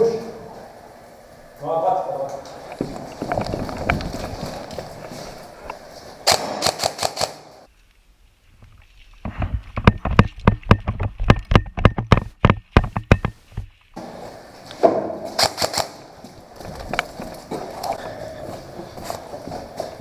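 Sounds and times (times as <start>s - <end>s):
rustling movement: 2.4s - 6.3s
airsoft rifle shots: 6.2s - 7.7s, 15.0s - 16.1s.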